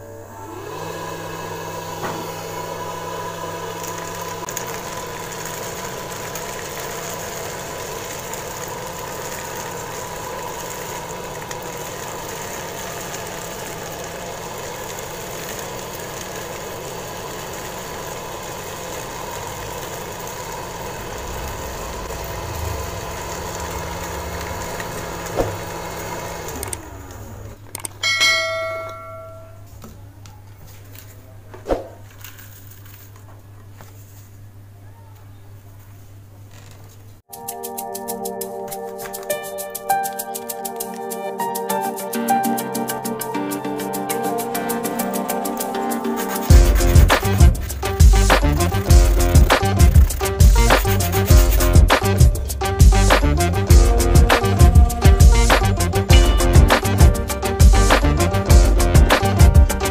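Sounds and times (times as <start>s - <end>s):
small motor whining: 0.0s - 27.6s, 42.3s - 59.9s
bell-like ring: 28.0s - 29.7s.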